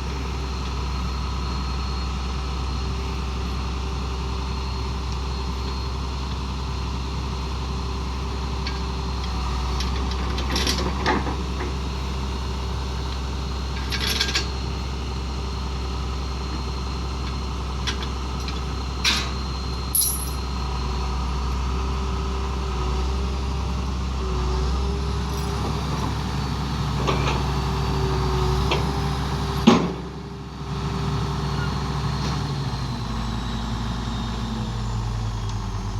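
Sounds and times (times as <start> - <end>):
sharp clanks and rattles: 9.8 - 11.8, 13.8 - 14.5, 17.8 - 20.4
vehicle engine idling low: 11.4 - 35.9.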